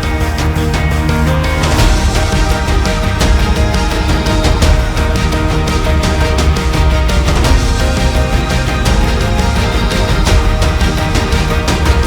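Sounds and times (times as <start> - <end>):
music with heavy steady beat: 0.0 - 12.0.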